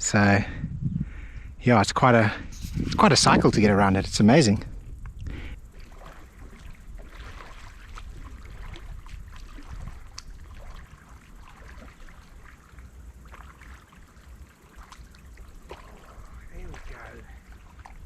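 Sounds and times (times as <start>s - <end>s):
water splashing and trickling: 5.4s - 18.0s.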